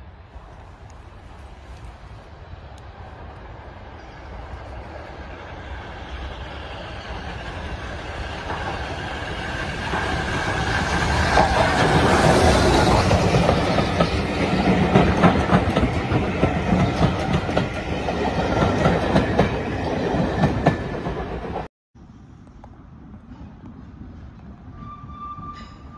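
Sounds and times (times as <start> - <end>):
steam train passing: 0.0 - 21.7
rhythmic train clatter: 2.8 - 21.7.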